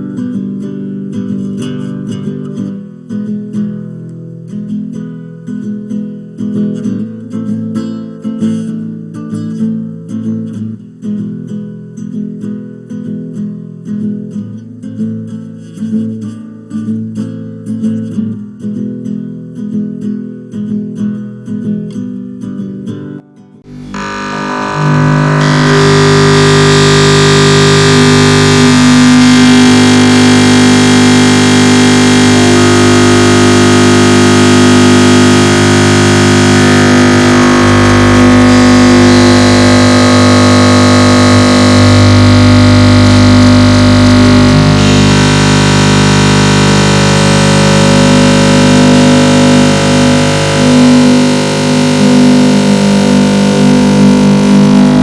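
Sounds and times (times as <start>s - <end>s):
distorted chord music: 23.7s - 55.0s.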